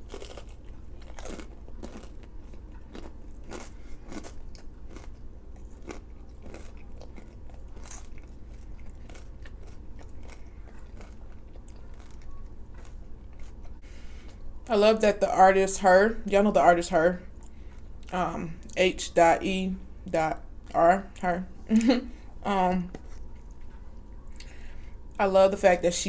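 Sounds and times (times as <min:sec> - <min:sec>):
person chewing food: 0:00.0 - 0:14.6, 0:17.3 - 0:18.8, 0:22.9 - 0:25.2.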